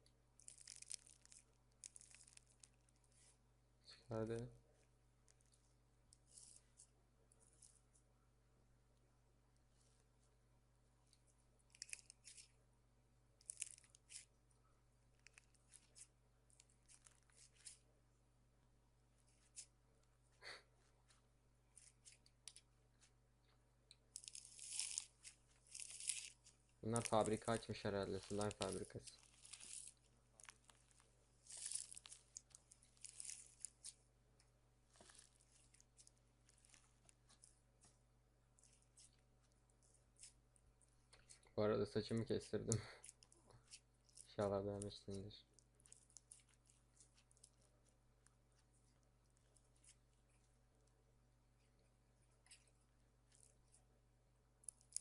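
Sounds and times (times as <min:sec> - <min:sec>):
slime squishing and crackling: 0:00.4 - 0:03.3, 0:11.7 - 0:12.5, 0:13.4 - 0:14.4, 0:15.1 - 0:17.8, 0:24.1 - 0:34.0, 0:42.0 - 0:47.8, 0:54.6 - 0:55.0.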